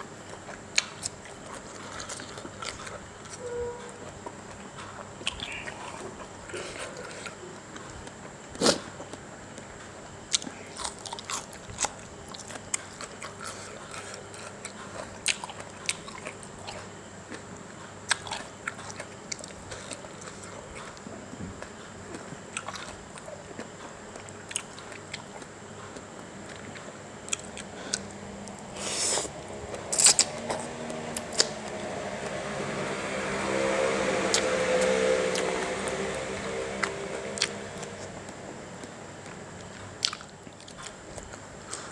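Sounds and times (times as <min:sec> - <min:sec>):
person chewing and crunching: 0:00.0 - 0:03.4, 0:10.3 - 0:31.6, 0:36.8 - 0:41.9.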